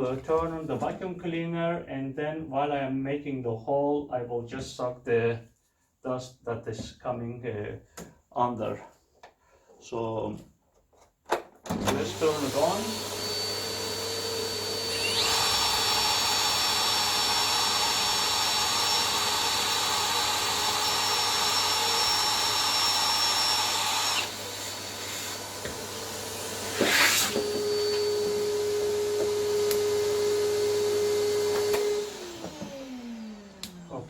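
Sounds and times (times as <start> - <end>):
vacuum cleaner running: 11.7 - 34.0
electric drill drilling into wall: 11.8 - 34.0.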